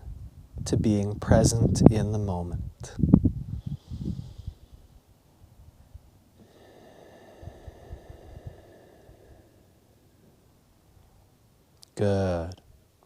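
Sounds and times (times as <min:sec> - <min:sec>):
man breathing deeply: 0:03.5 - 0:05.1, 0:06.4 - 0:10.8.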